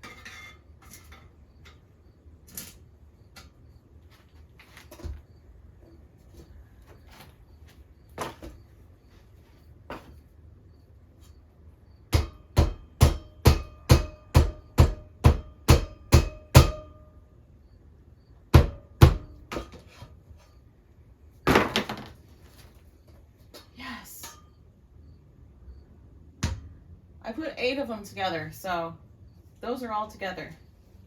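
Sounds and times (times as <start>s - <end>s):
hammer striking metal: 12.1s - 17.1s.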